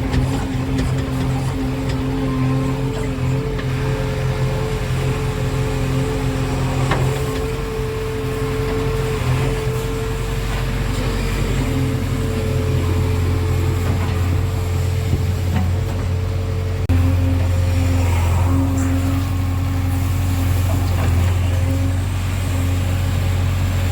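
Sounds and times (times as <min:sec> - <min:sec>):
diesel engine running with whine: 0:00.0 - 0:23.9.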